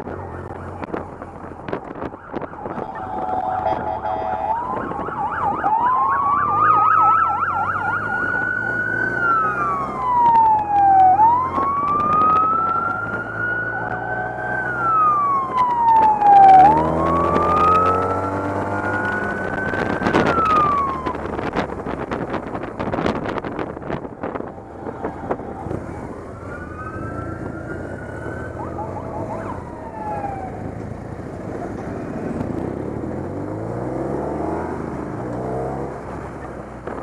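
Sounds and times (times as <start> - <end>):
police sirens wailing: 0.0 - 34.1
motorcycle engines running: 0.0 - 37.0
siren fast yelp: 2.0 - 21.2, 26.4 - 30.6
steady horn-like tone: 2.8 - 4.6.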